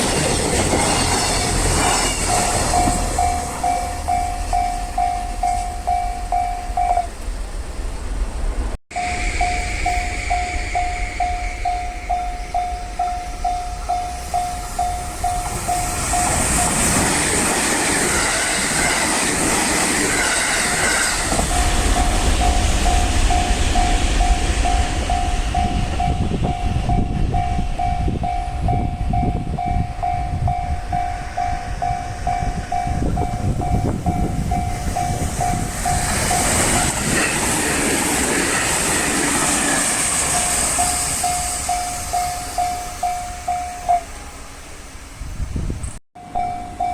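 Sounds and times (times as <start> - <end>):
train wheels clattering over joints: 0.0 - 5.8, 13.9 - 27.6
level-crossing warning bell: 0.0 - 7.4, 8.9 - 45.0, 46.2 - 46.9
hiss from wheels and rails: 0.0 - 28.7, 29.6 - 46.9.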